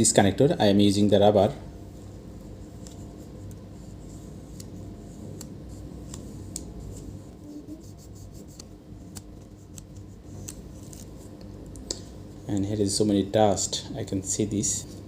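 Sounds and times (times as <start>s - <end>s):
eraser rubbing on contacts: 2.1s - 11.2s.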